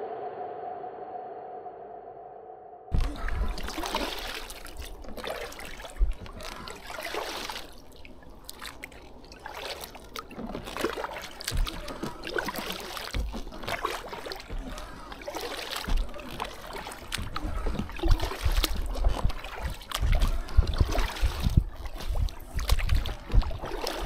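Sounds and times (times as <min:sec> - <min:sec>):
paddle splashing water: 0:02.9 - 0:24.0.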